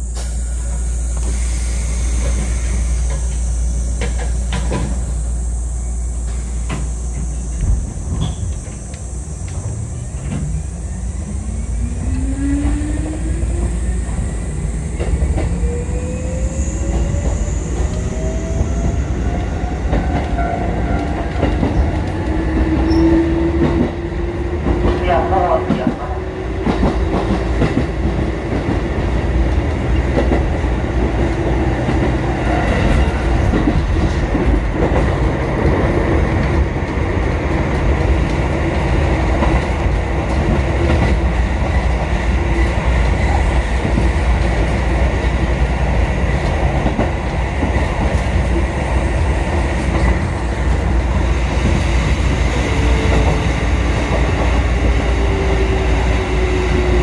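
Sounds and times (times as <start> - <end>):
train motor hum: 0.0 - 57.0
train wheels rumbling on rails: 0.0 - 57.0.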